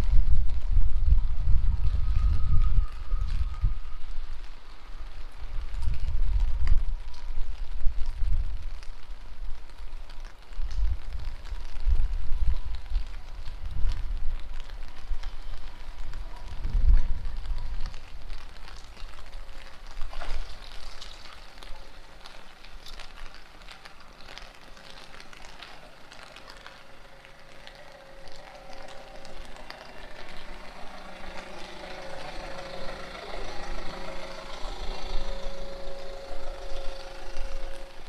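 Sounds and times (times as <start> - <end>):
wind buffeting microphone: 0.0 - 21.9
rain pattering and dripping: 0.0 - 38.0
vehicle engine running: 17.3 - 38.0.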